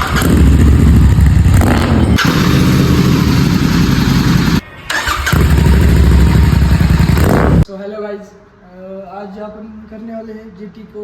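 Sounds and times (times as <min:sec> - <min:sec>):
motorcycle engine running loudly: 0:00.0 - 0:04.6, 0:05.3 - 0:07.6.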